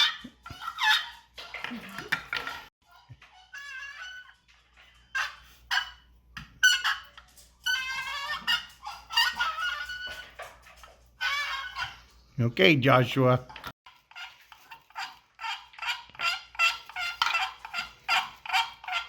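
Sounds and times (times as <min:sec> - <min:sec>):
squeaky turkey call yelps: 0:06.6 - 0:07.1, 0:07.7 - 0:10.4, 0:11.2 - 0:12.0, 0:14.1 - 0:19.0.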